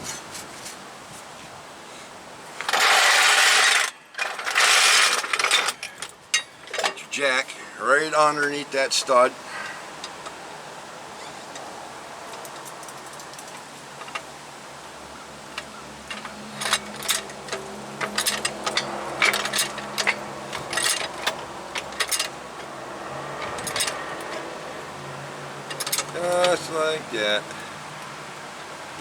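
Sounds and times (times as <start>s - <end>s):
metal clinks and knocks: 2.7s - 7.1s, 15.4s - 24.9s, 25.6s - 27.6s.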